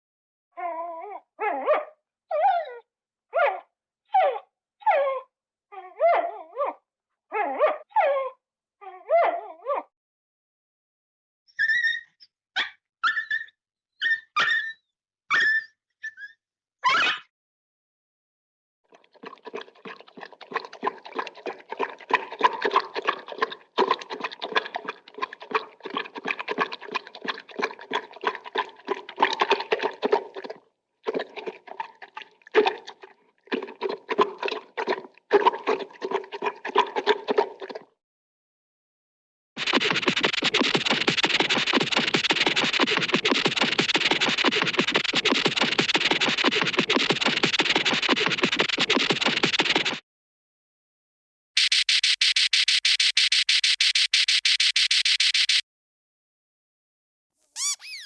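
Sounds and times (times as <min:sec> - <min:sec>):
dog whining: 0:00.6 - 0:02.8, 0:03.4 - 0:09.9, 0:11.6 - 0:17.3, 0:57.6 - 0:58.0
rapid clicking: 0:39.6 - 0:50.0.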